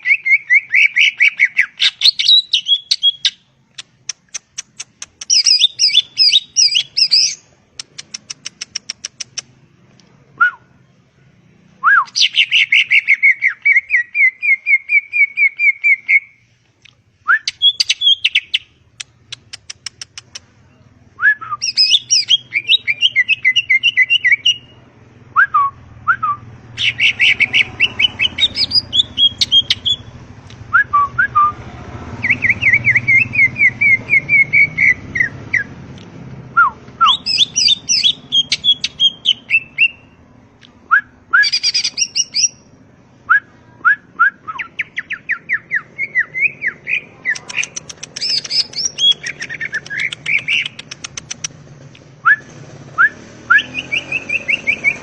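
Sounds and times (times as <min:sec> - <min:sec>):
bird singing whistled song: 0:00.0 - 0:03.4, 0:05.2 - 0:07.4, 0:10.4 - 0:10.7, 0:11.8 - 0:16.4, 0:17.2 - 0:18.7, 0:20.7 - 0:24.8, 0:25.4 - 0:30.1, 0:30.7 - 0:31.6, 0:32.2 - 0:35.8, 0:36.6 - 0:40.2, 0:40.9 - 0:42.7, 0:43.3 - 0:51.4, 0:52.2 - 0:55.0.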